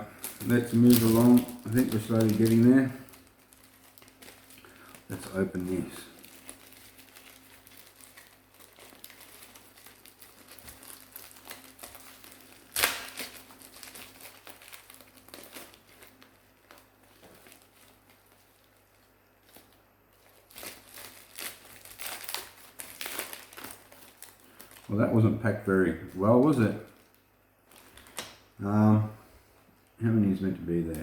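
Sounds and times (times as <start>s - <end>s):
plastic packaging crinkling: 0.0s - 28.5s
loud crackle: 0.2s - 3.2s.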